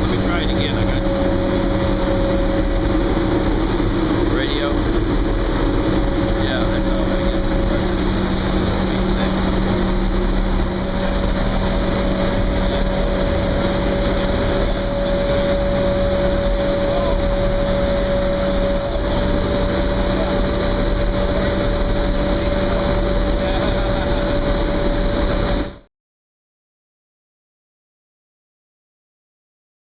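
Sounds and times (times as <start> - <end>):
dense rushing noise: 0.0 - 25.8
higher steady tone: 0.0 - 25.8
constant low hum: 0.0 - 25.9.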